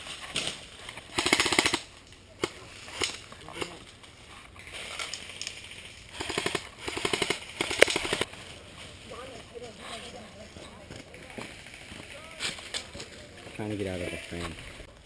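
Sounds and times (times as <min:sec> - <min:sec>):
airsoft guns firing bursts: 0:01.1 - 0:03.7, 0:06.1 - 0:08.3.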